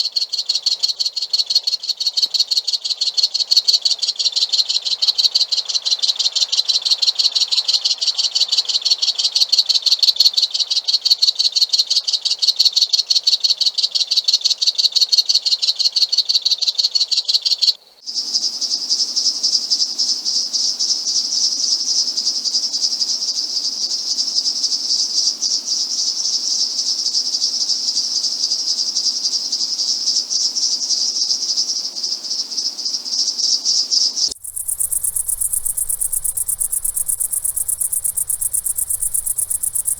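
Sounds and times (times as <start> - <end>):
buzzing insect chorus: 34.3 - 39.9
trilling insects chorus: 34.3 - 39.9.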